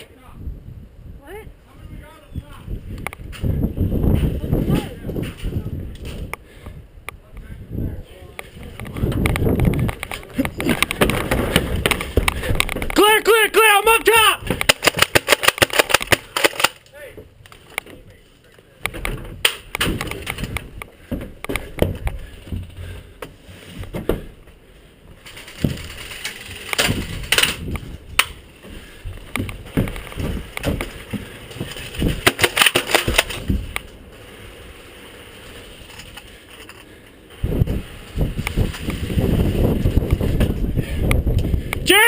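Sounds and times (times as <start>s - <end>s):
knocks and rustles: 8.4s - 13.0s, 18.8s - 34.2s
sharp clicks: 14.5s - 17.9s.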